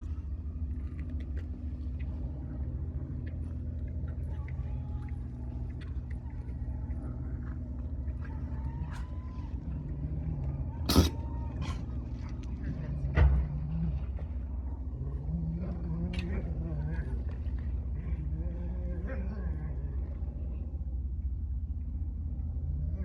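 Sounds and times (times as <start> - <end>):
low engine-like rumble: 0.0 - 23.0
seal pup sneezing: 10.8 - 11.9.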